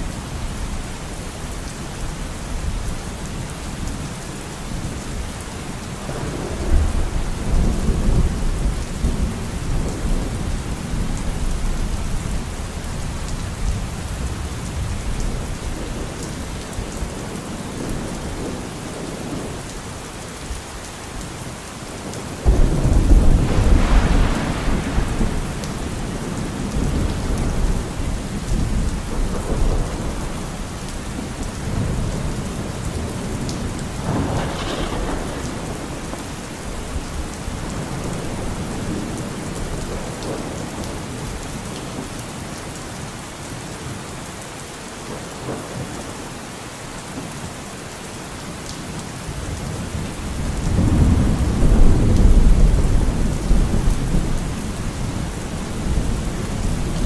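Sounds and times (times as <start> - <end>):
steady rainfall: 0.0 - 57.0
thunder: 6.1 - 11.7, 22.4 - 30.6, 31.2 - 41.4, 49.7 - 57.0.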